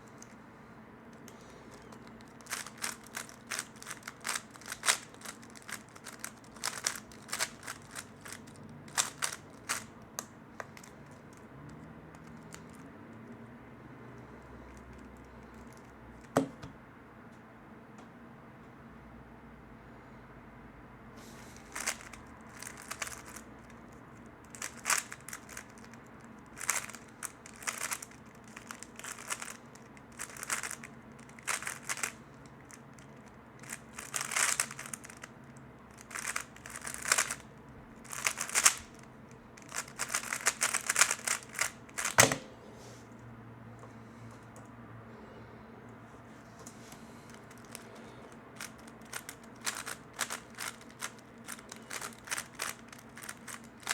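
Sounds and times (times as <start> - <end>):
puzzle cube plastic layers clicking: 1.2 - 11.2, 21.7 - 23.7, 24.5 - 35.3, 35.9 - 37.4, 38.0 - 42.2, 47.3 - 47.8, 48.6 - 53.9.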